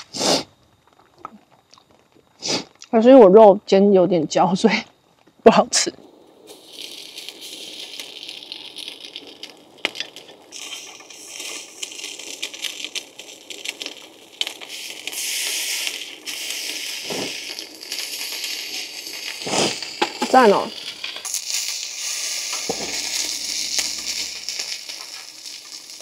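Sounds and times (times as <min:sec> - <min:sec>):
food sizzling in a frying pan: 0:05.7 - 0:26.0
pops and clicks: 0:06.5 - 0:26.0.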